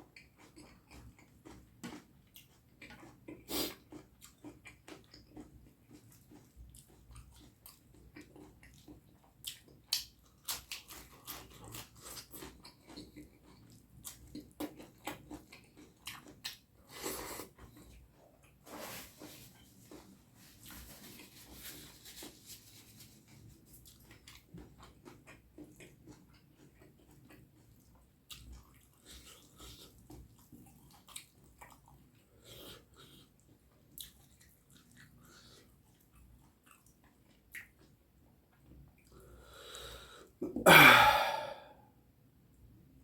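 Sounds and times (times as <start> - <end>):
chewing and wet mouth clicks: 0.1 - 16.7, 23.8 - 32.0, 33.4 - 39.2
breath in: 39.3 - 41.8
loud voiced throat burst: 40.4 - 41.8.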